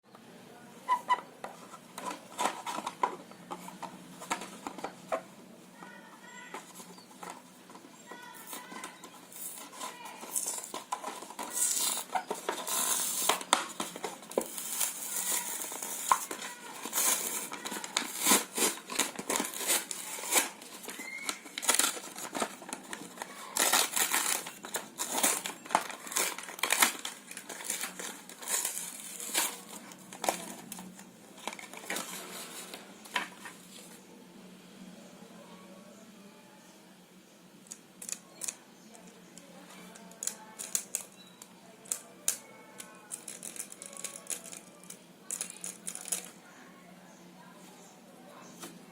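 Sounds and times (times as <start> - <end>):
plastic and cardboard crinkling: 0.9 - 34.0, 38.0 - 46.5
packaging clicks and knocks: 6.5 - 33.5, 39.9 - 46.3.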